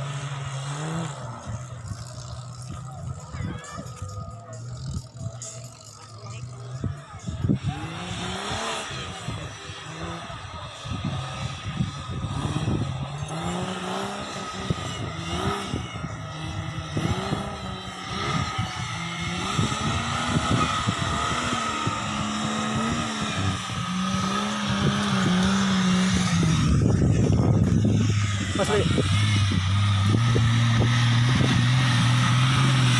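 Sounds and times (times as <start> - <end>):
off-road vehicle engine revving: 0.0 - 32.9.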